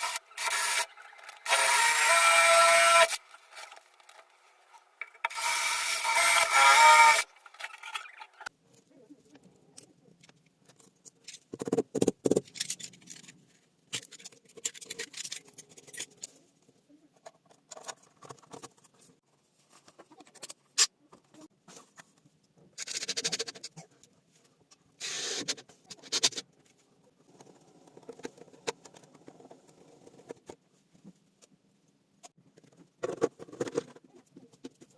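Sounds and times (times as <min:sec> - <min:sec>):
rasping power tool: 0:00.0 - 0:03.8, 0:05.2 - 0:08.1.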